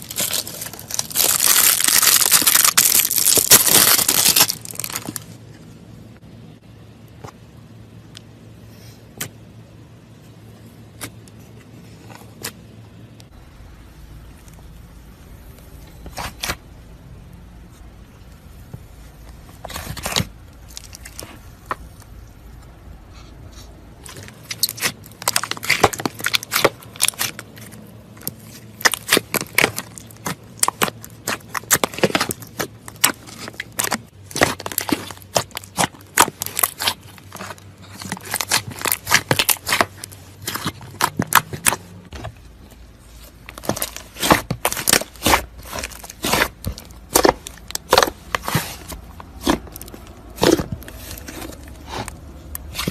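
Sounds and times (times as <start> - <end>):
slime crackling and popping: 0.0 - 5.4, 24.0 - 52.9.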